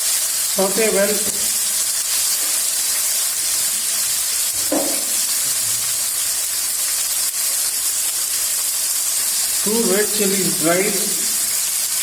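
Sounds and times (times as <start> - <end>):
food sizzling in oil: 0.0 - 12.0.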